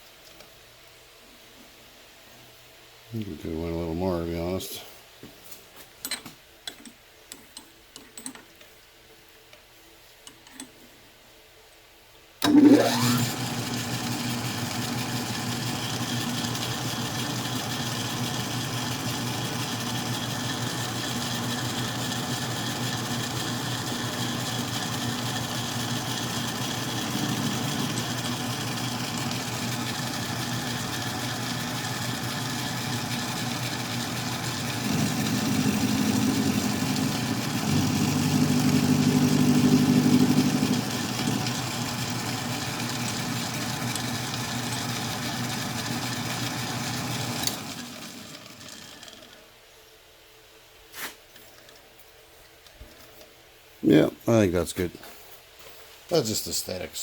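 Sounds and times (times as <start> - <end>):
lathe motor running: 12.5 - 49.4.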